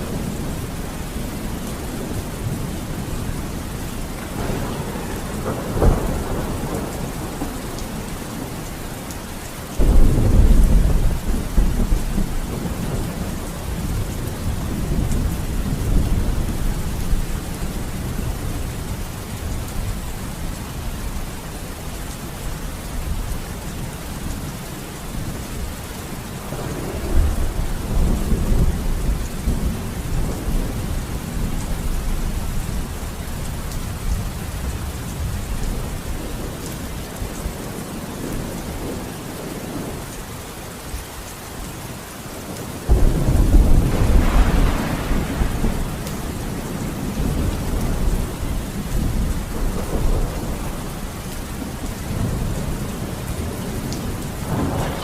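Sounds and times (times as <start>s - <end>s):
thunder rumbling: 0.0s - 9.1s, 9.8s - 21.2s, 26.4s - 40.0s, 42.9s - 55.0s
steady rain: 0.0s - 55.0s
thunderclap: 4.2s - 8.1s, 9.8s - 13.3s, 42.9s - 51.0s, 54.4s - 55.0s.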